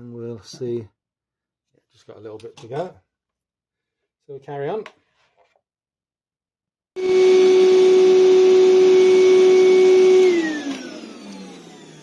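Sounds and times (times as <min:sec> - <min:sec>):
lathe motor whining: 0:07.0 - 0:12.0.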